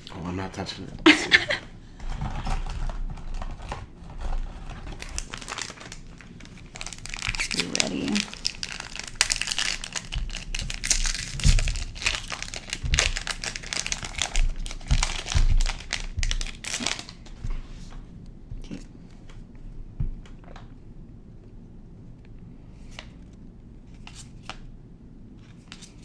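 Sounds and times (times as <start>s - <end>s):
foil wrapper crinkling and tearing: 4.6s - 17.4s.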